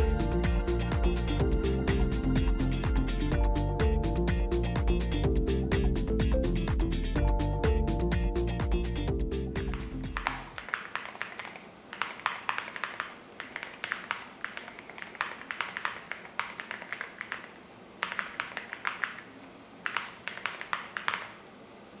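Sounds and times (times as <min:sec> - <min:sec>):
mechanical keyboard typing: 0:09.8 - 0:21.5.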